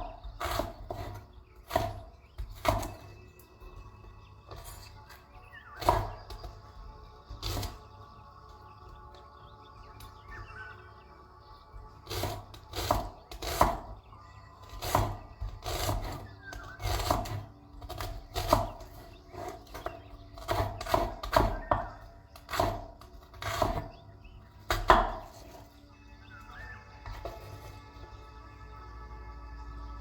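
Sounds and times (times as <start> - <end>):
knife chopping on wooden board: 0.0 - 3.8, 5.8 - 6.5, 7.3 - 7.8, 12.0 - 14.0, 14.7 - 24.0, 24.7 - 25.6
faint background music: 0.0 - 30.0.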